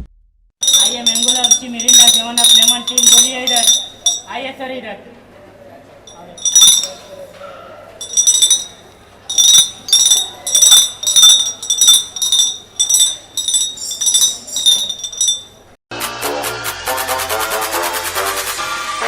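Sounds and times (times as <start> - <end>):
glass bottles clinking: 0.6 - 4.3, 6.1 - 7.3, 8.0 - 15.6.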